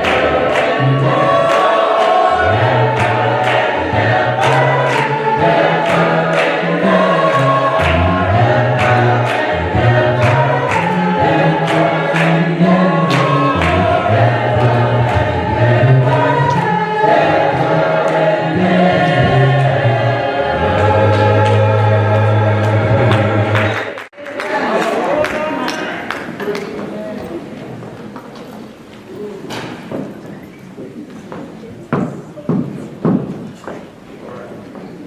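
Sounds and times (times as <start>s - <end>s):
gospel choir singing: 0.0s - 26.0s.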